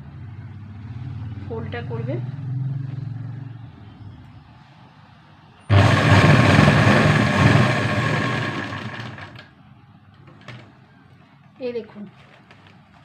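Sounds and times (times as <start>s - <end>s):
sewing machine whining: 5.7s - 9.5s.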